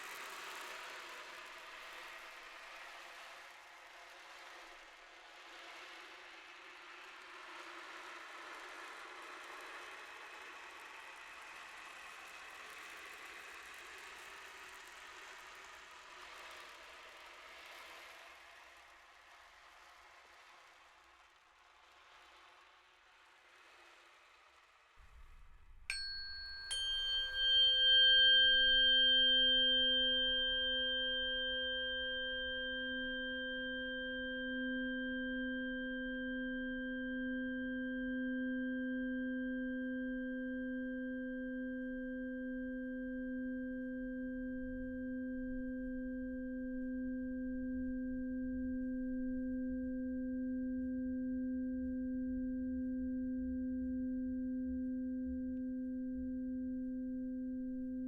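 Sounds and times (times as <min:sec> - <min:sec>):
low steady hum: 0:25.0 - 0:40.5
singing bowl struck: 0:25.8 - 0:41.1
high ringing tones: 0:25.9 - 0:36.3.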